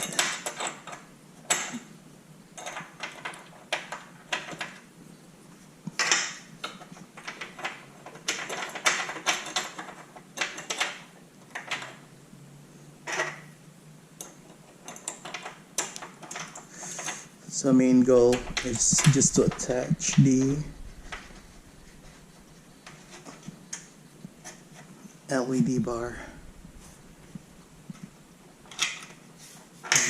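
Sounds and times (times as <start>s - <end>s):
metal clinks and knocks: 0.0s - 1.8s, 18.1s - 23.8s.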